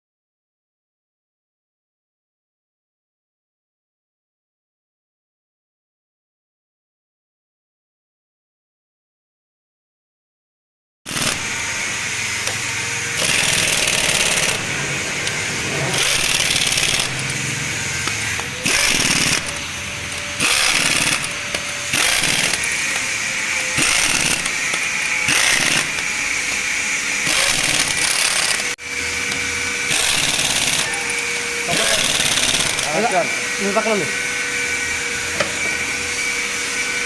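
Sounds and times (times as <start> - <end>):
power tool running with hiss: 11.1 - 37.0.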